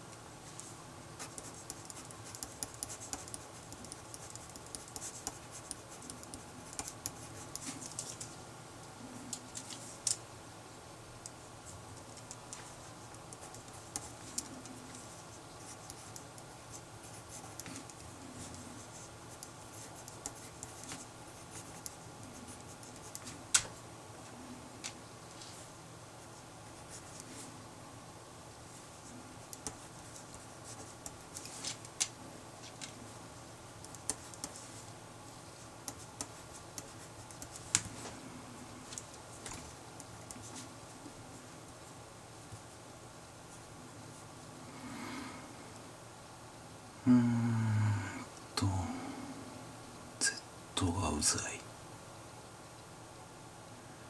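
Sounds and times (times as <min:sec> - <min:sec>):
pen scratching on paper: 0:01.2 - 0:07.9.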